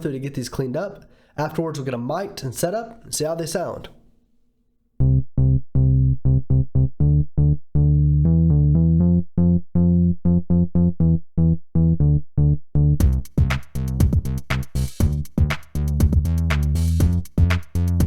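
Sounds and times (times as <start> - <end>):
synthesizer plucked notes: 5.0 - 13.3
drum beat: 13.0 - 18.0.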